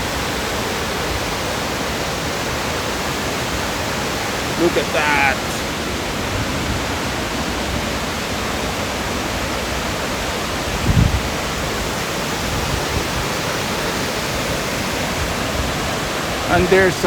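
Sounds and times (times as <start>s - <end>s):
waterfall roaring: 0.0s - 17.0s.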